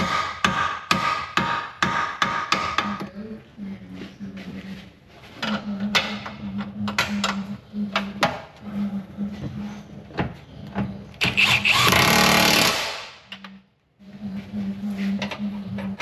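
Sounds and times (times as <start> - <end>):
power tool burst: 11.3 - 13.1.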